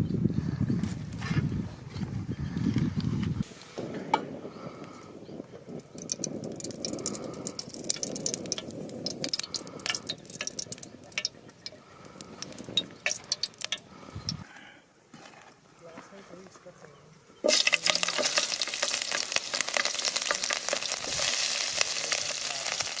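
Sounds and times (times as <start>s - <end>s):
liquid splashing and dripping: 5.8s - 14.4s
small clicks and taps: 5.8s - 14.4s.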